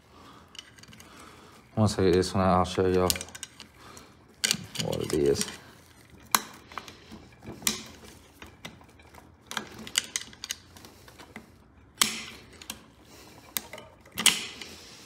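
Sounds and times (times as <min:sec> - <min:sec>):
screwdriver scraping metal: 0:04.4 - 0:06.5.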